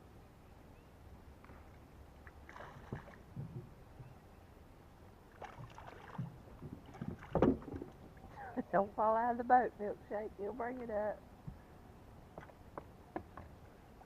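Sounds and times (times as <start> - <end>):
water splashing against boat: 2.2 - 4.2, 5.3 - 8.6
boat thump: 5.4 - 8.2.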